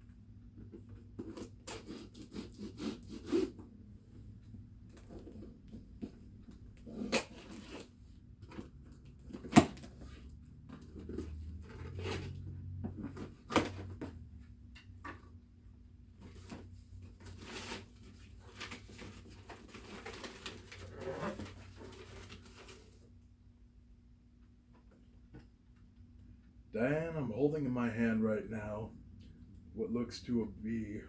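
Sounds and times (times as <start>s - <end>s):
cardboard tearing and rustling: 16.2s - 23.0s.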